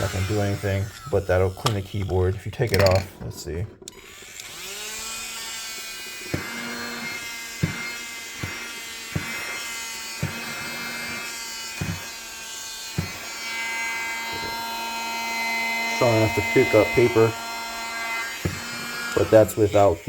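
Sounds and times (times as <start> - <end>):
handheld vacuum whine: 0.0 - 3.0, 3.8 - 20.0.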